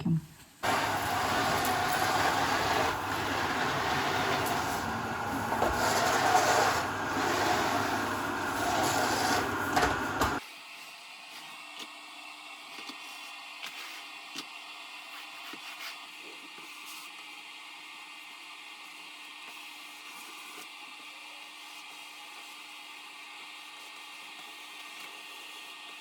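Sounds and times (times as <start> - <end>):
vacuum cleaner running: 0.6 - 10.4.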